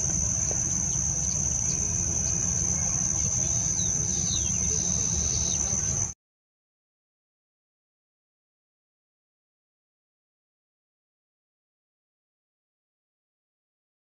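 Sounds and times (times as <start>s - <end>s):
insect drone: 0.0s - 6.2s
faint bird chirps: 0.4s - 6.1s.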